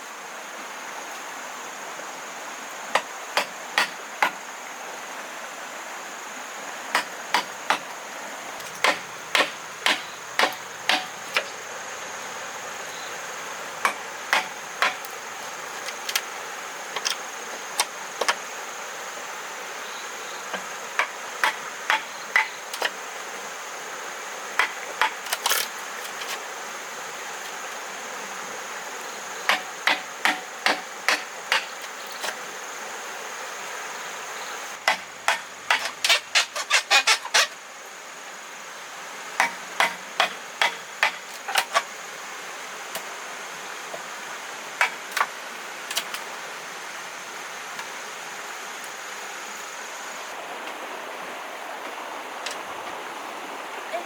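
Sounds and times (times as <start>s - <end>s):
high insect drone: 0.0s - 54.0s
hand tool striking bamboo: 3.0s - 4.4s, 6.9s - 7.9s, 8.6s - 11.5s, 13.8s - 15.2s, 21.0s - 23.0s, 24.6s - 26.4s, 29.5s - 32.4s, 34.8s - 37.4s, 39.4s - 41.8s.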